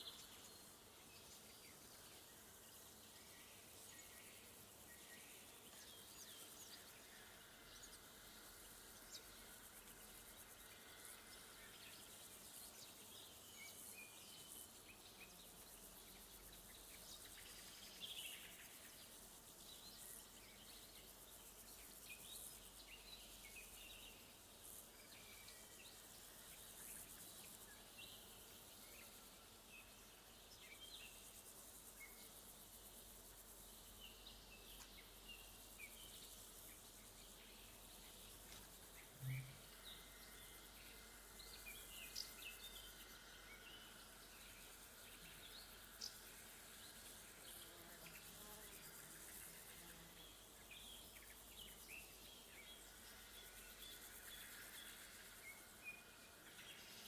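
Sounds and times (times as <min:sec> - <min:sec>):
bird chirps and calls: 0:39.2 - 0:39.6.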